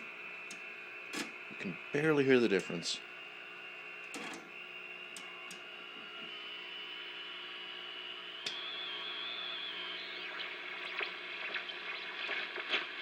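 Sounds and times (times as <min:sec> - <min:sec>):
click: 0:05.1 - 0:05.6, 0:08.4 - 0:08.6
high whistle: 0:08.2 - 0:11.1.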